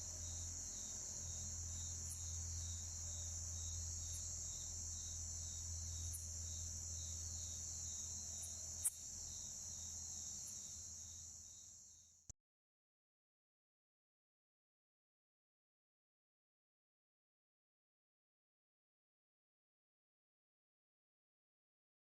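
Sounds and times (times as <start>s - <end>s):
high-pitched insect trill: 0.0s - 12.2s.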